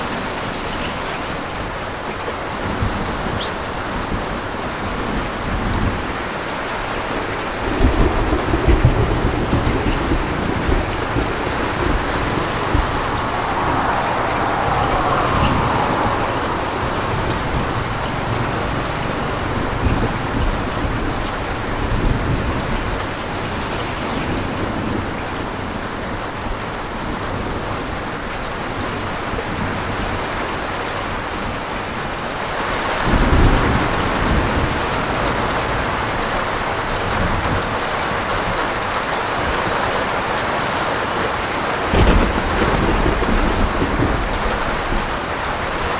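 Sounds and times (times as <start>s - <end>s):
heavy rain pattering: 0.0s - 45.9s
rolling thunder: 2.6s - 30.2s, 41.6s - 45.9s.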